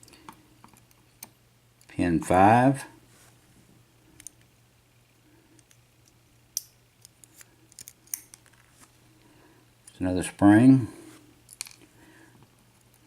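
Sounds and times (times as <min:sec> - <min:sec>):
metallic clicks of lock parts: 0:05.6 - 0:08.5.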